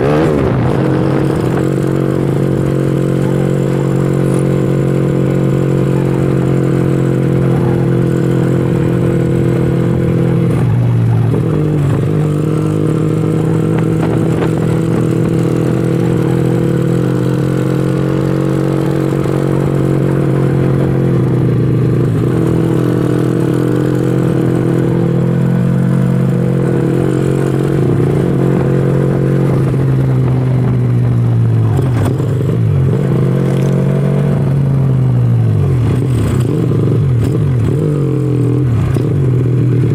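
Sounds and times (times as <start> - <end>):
motorcycle engine revving high: 0.0 - 39.9.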